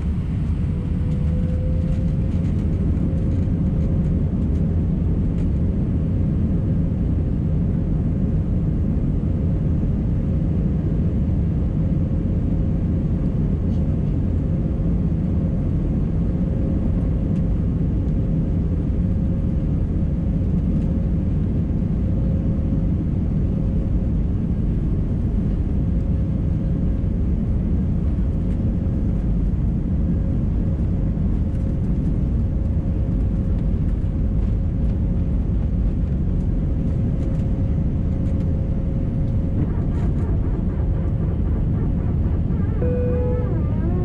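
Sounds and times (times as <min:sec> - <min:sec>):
jet engine cabin rumble: 0:00.0 - 0:44.0
faint steady hum: 0:35.4 - 0:44.0.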